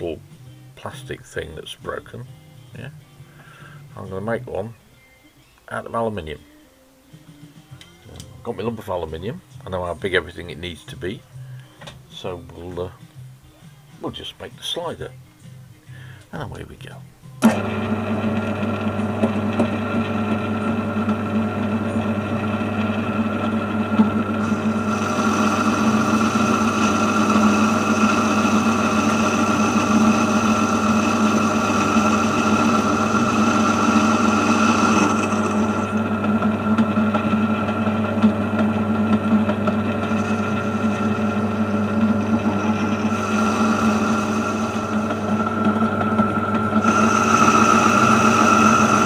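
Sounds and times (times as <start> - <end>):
metal lathe humming: 17.4 - 49.0
tool cutting metal hiss: 42.5 - 45.3, 46.8 - 49.0.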